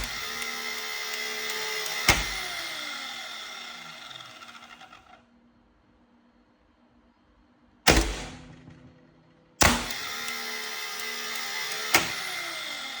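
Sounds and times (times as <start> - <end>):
circuit breaker clacking: 0.0 - 2.6
mechanical running sound: 0.0 - 5.2, 9.6 - 13.0.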